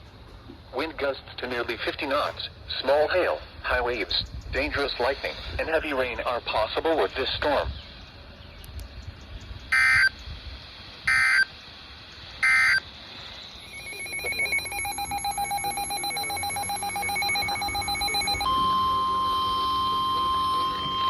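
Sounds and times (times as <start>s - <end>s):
digital data tones: 9.7s - 10.1s, 11.1s - 11.5s, 12.4s - 12.8s, 13.6s - 21.0s
pulsing electronic alarm: 9.7s - 10.1s, 11.0s - 11.5s, 12.4s - 12.8s, 13.6s - 21.0s
steady alarm tone: 9.7s - 10.1s, 11.1s - 11.5s, 12.4s - 12.8s, 13.6s - 21.0s.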